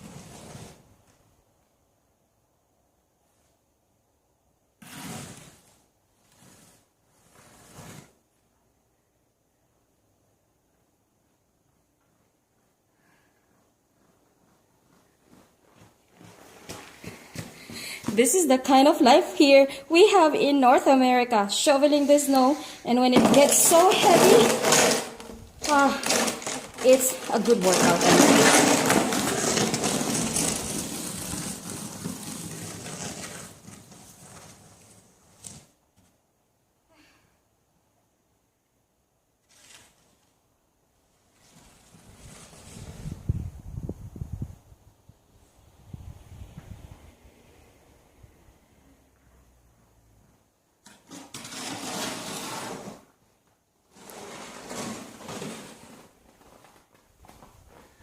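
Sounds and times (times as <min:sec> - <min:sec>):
snow shovel scraping snow: 0:00.0 - 0:00.8, 0:21.9 - 0:35.5, 0:51.3 - 0:53.0, 0:53.9 - 0:56.2.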